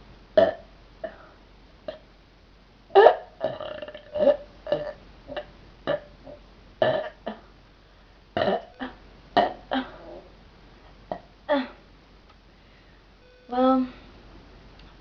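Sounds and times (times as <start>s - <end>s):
girl burping: 3.0s - 6.1s, 6.8s - 7.4s, 8.4s - 10.3s, 11.1s - 11.8s.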